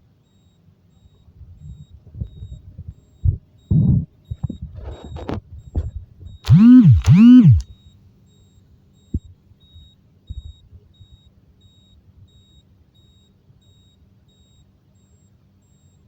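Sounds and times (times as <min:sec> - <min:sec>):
alarm buzzer beeping: 0:06.5 - 0:07.6
low electrical hum: 0:06.5 - 0:07.6.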